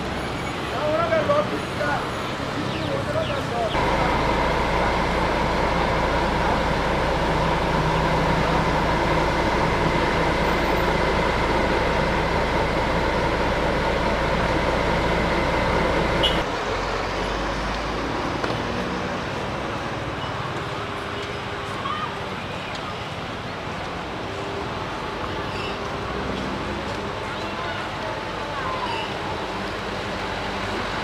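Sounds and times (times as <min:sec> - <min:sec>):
road traffic noise: 0:00.0 - 0:31.0
vehicle engine running: 0:03.6 - 0:16.5.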